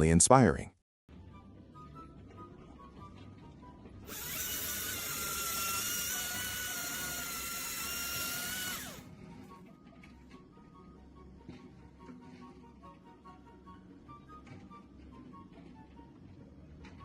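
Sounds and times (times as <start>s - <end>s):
quiet background music: 0.0s - 17.0s
power tool motor whining: 4.1s - 9.1s.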